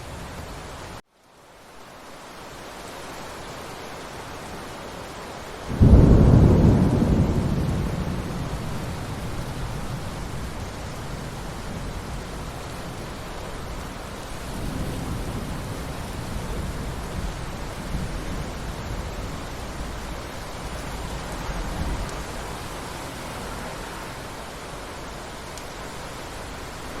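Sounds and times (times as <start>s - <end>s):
rain hiss: 0.0s - 27.0s
roll of thunder: 5.7s - 11.9s
thunderclap and rumble: 5.7s - 22.9s.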